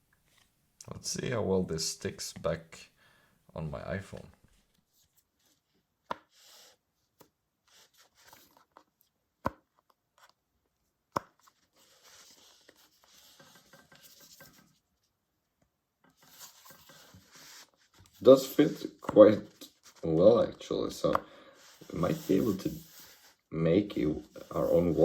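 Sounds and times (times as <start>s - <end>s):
soft rustling and scraping: 11.4s - 15.2s, 16.0s - 25.0s.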